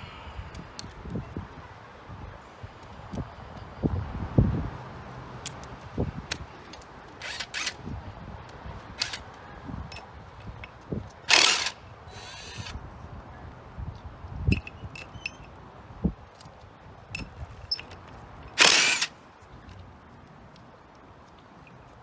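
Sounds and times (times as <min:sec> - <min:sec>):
metal nuts clinking: 0:07.2 - 0:07.8, 0:09.0 - 0:09.2, 0:11.3 - 0:12.8, 0:18.6 - 0:19.1
power tool spinning lug nuts: 0:07.2 - 0:07.8, 0:09.0 - 0:09.2, 0:11.3 - 0:12.8, 0:18.6 - 0:19.1.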